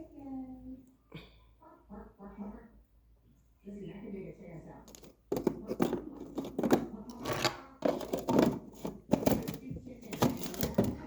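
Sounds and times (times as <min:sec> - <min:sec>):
food packages rustling and crinkling: 0:04.9 - 0:11.0.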